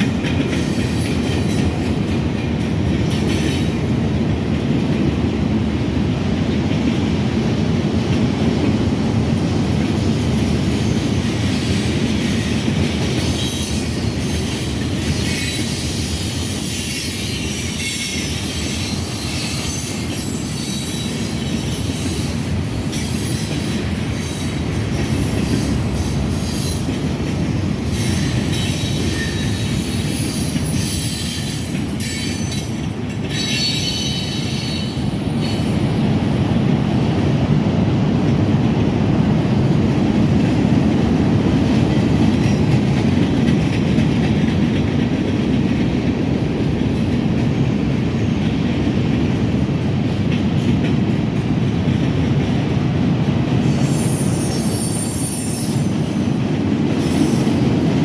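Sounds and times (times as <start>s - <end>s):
train wheels clattering on rails: 0.0s - 58.0s
wheels squealing: 27.9s - 35.7s, 53.6s - 56.2s.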